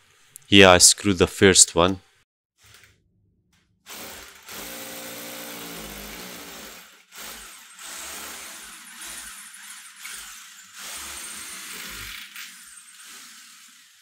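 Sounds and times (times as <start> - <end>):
power drill driving a screw: 3.9 - 14.0.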